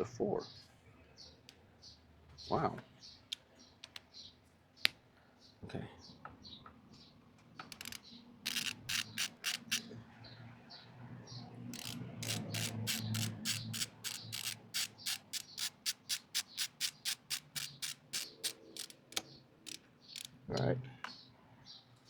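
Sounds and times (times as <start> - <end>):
ratchet wrench clicking: 7.7 - 9.9, 11.7 - 20.4.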